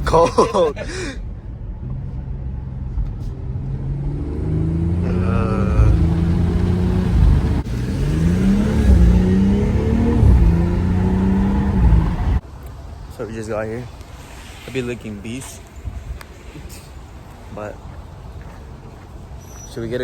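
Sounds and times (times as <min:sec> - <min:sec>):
car engine accelerating: 0:01.8 - 0:12.4.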